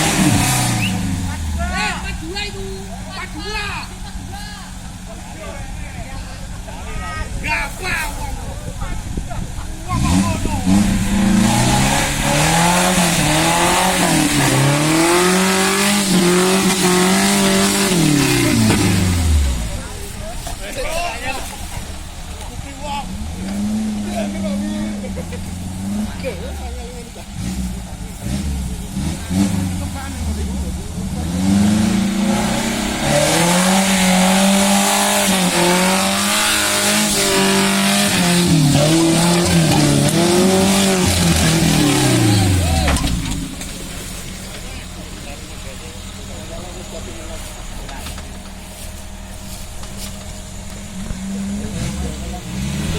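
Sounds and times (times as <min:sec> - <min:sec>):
car engine revving hard: 0:00.0 - 0:06.6, 0:09.0 - 0:52.9
steady rushing hiss: 0:43.2 - 0:52.5.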